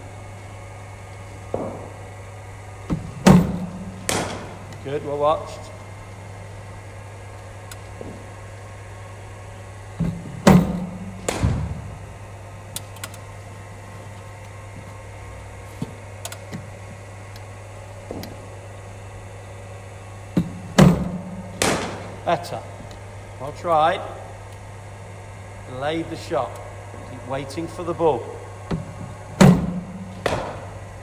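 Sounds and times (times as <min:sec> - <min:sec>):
low hum: 0:00.0 - 0:31.0
cricket ball struck by bat: 0:10.5 - 0:11.8, 0:20.8 - 0:22.2, 0:29.4 - 0:30.8.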